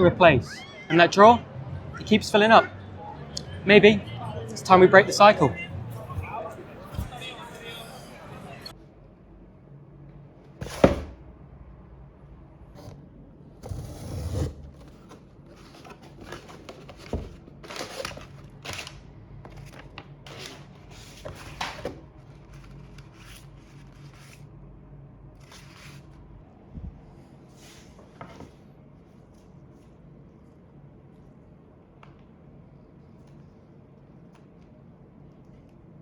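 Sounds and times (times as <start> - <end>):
cardboard packaging rustling: 13.6 - 24.4.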